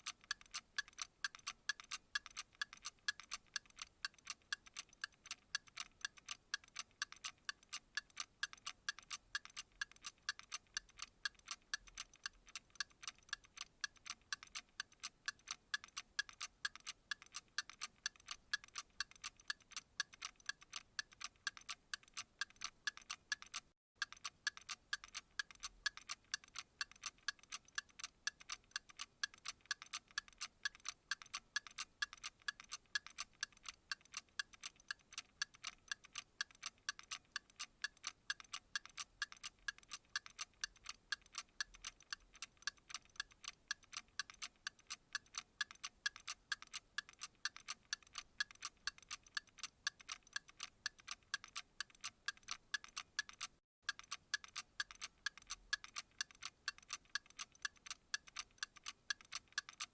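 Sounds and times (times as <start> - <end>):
clock ticking: 0.0 - 59.9.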